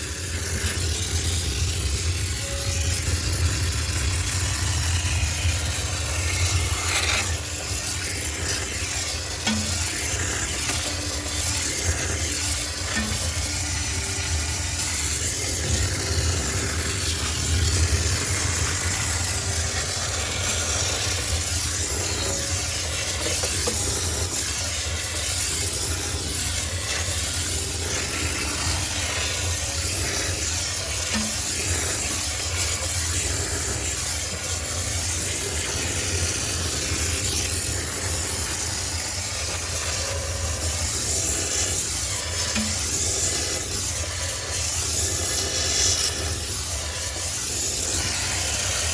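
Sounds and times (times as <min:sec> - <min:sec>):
steam cleaner spraying hiss: 0:00.0 - 0:48.9.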